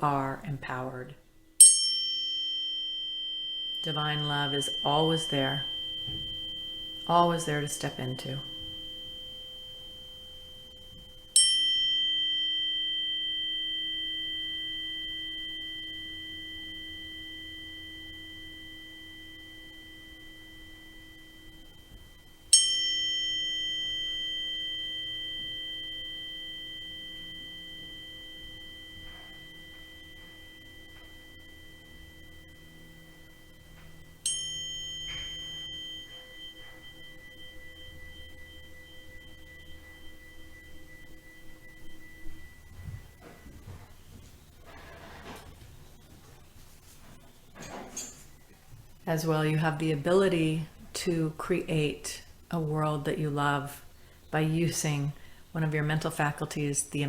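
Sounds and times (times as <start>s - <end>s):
metal chime ringing: 1.6s - 46.0s, 46.8s - 57.0s.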